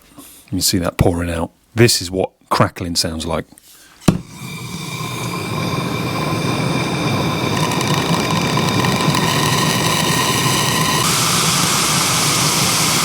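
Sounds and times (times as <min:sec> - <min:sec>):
blowtorch hissing: 0:04.0 - 0:13.0
torch igniter click: 0:04.1 - 0:13.0
water crackling in pipe: 0:04.2 - 0:12.2.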